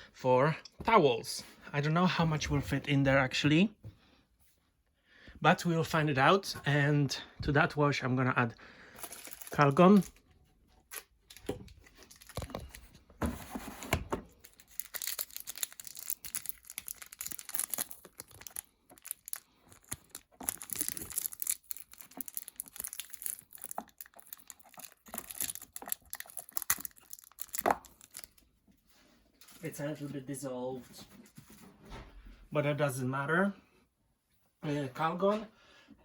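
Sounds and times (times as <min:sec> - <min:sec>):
packaging crinkling and tearing: 0:09.0 - 0:10.2, 0:10.8 - 0:13.0, 0:14.3 - 0:28.4.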